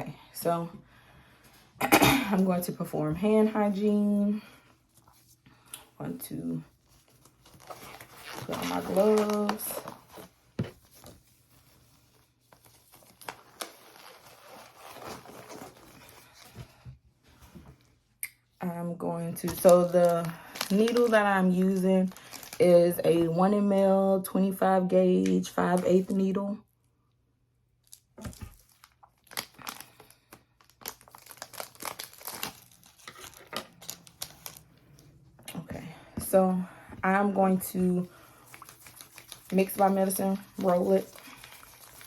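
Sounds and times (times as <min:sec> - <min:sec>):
thin gloves rustling: 0:06.7 - 0:16.8, 0:36.4 - 0:42.0
packaging crinkling and tearing: 0:06.9 - 0:16.5, 0:19.5 - 0:22.6, 0:27.8 - 0:35.0, 0:38.2 - 0:42.0.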